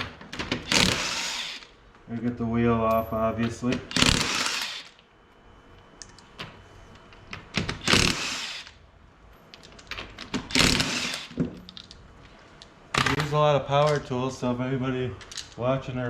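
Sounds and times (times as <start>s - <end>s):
power tool bursts: 0.6s - 1.7s, 3.9s - 5.0s, 7.7s - 8.8s, 10.5s - 11.4s.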